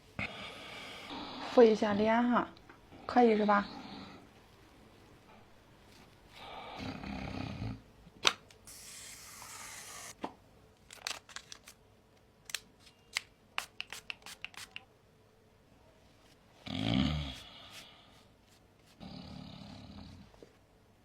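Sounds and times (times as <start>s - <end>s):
packet crinkling: 10.8s - 11.8s
packet tearing open: 10.8s - 11.8s.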